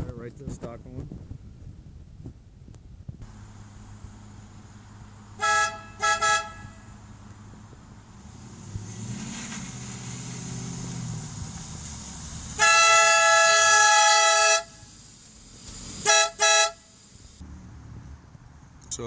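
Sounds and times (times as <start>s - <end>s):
train horn blasts: 5.4s - 6.9s, 12.6s - 14.8s, 16.0s - 16.9s.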